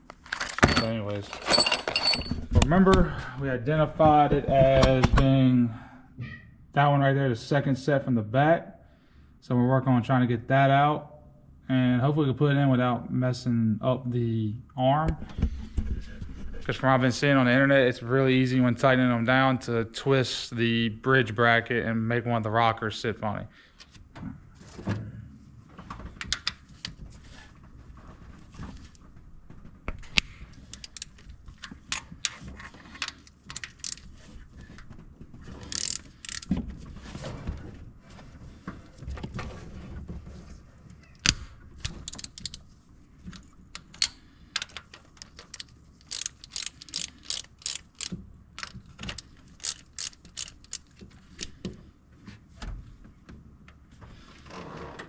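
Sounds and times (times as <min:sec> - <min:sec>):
hand tool metal clicks: 0:33.5 - 0:34.0, 0:35.7 - 0:36.5, 0:42.0 - 0:42.6, 0:43.8 - 0:50.9.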